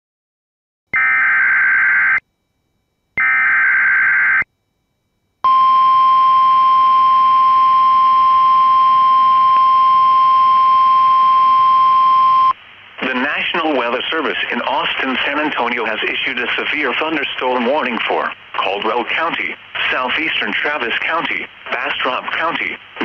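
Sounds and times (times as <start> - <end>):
steady warning alarm tone: 1.0 - 4.5, 5.4 - 12.6.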